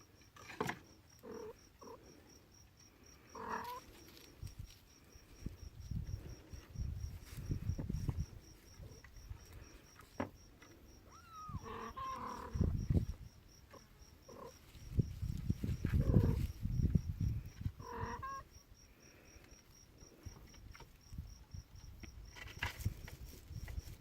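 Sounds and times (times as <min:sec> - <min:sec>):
kittens mewing: 0:03.3 - 0:03.9, 0:11.0 - 0:12.8, 0:17.8 - 0:18.5
rustling: 0:03.4 - 0:05.6
soft low bumps: 0:05.3 - 0:11.0.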